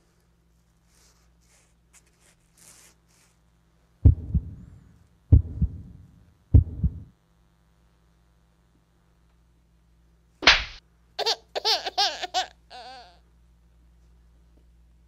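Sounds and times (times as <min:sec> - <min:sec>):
low steady hum: 0:00.0 - 0:15.0
heartbeat thumps: 0:04.0 - 0:07.1.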